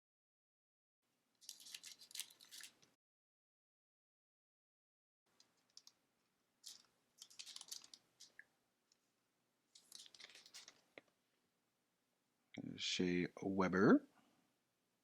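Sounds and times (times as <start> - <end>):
trading cards rustling and clicking: 1.4 - 2.9, 5.4 - 6.0, 6.6 - 8.4, 9.8 - 11.0.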